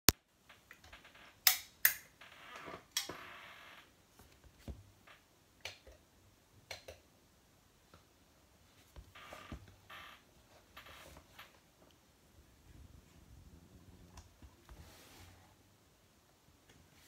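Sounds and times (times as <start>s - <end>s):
rustling: 8.6s - 15.7s.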